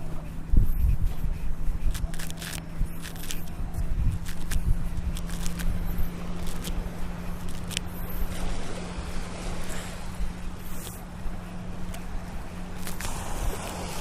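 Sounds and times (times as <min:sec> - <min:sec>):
steady low hum: 0:00.0 - 0:14.0
sharp clicks: 0:01.9 - 0:05.8, 0:07.4 - 0:07.9
ocean surf on sandy shore: 0:05.1 - 0:14.0.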